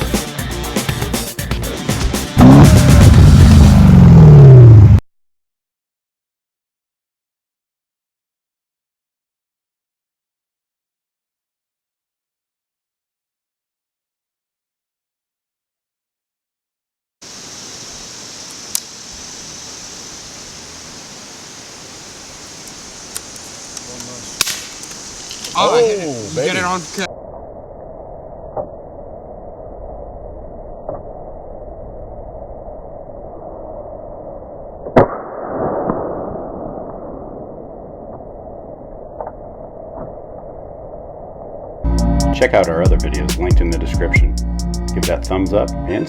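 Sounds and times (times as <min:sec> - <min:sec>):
rushing noise: 0:02.3 - 0:05.0
steady hiss: 0:17.2 - 0:27.1
air rifle crack: 0:22.6 - 0:25.6
air rifle shot: 0:24.4 - 0:25.0, 0:34.8 - 0:36.7.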